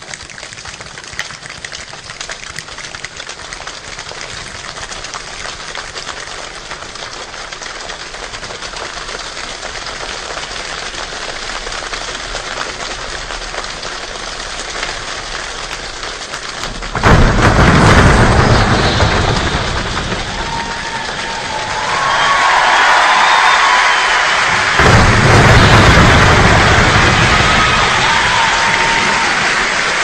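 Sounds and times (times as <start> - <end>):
steady rain falling: 0.0 - 30.0
loud rushing noise: 17.0 - 30.0.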